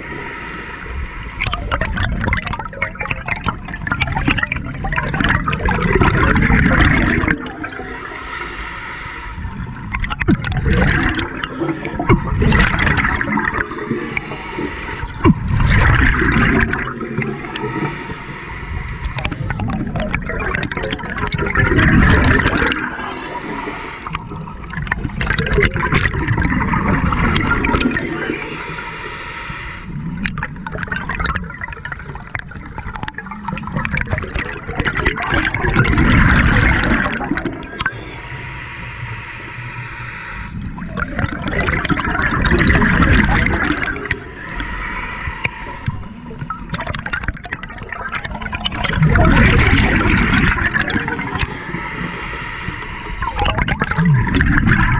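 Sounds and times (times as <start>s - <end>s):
regulator inhalation hiss: 0.0s - 1.9s, 6.8s - 9.9s, 11.0s - 19.9s, 21.9s - 24.8s, 27.2s - 30.2s, 36.0s - 47.4s, 49.4s - 53.8s
bubbles gurgling underwater: 1.4s - 8.1s, 9.4s - 28.6s, 30.0s - 38.5s, 39.6s - 54.9s.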